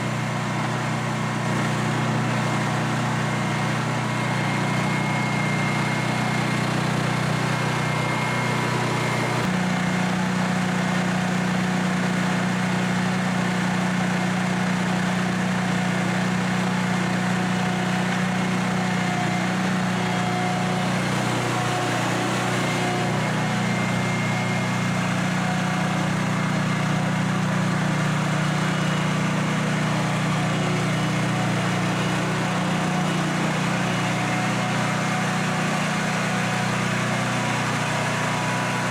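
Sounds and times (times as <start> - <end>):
leaf blower engine drone: 0.0 - 38.9.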